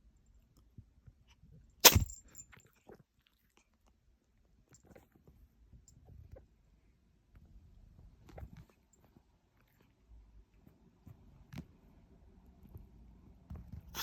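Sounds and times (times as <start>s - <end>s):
faint clicks and rustles: 0.4s - 14.0s
kitten sneezing: 1.8s - 2.1s.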